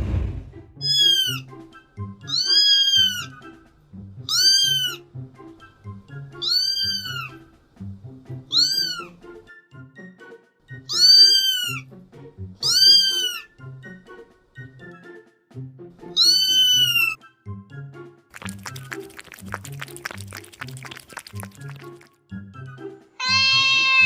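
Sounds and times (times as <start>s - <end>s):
background music: 0.1s - 24.0s
cat meowing: 0.8s - 1.4s, 2.3s - 3.3s, 4.3s - 5.0s, 6.4s - 7.4s, 8.5s - 9.2s, 10.9s - 11.8s, 12.6s - 13.5s, 16.2s - 17.2s.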